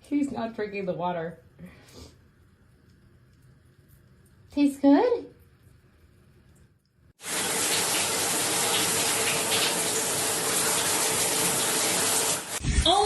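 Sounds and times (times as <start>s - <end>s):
water running from a tap: 7.2s - 12.6s.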